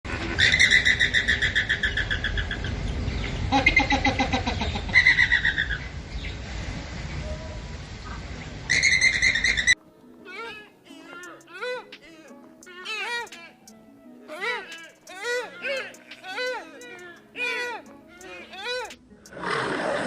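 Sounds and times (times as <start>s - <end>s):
animal trilling chirps: 0.3s - 2.8s, 8.7s - 12.0s, 14.3s - 19.0s.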